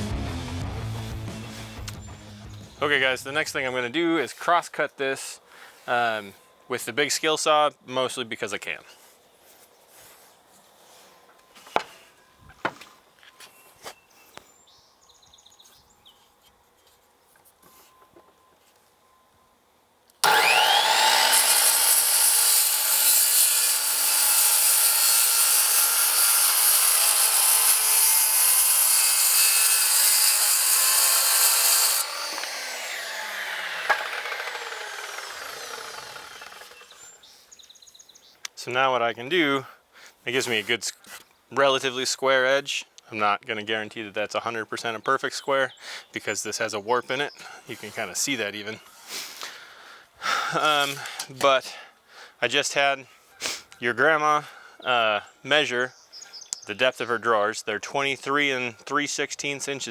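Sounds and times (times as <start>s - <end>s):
circular saw cutting wood: 0.9s - 3.4s, 20.2s - 37.2s
saw blade winding down: 20.2s - 37.2s.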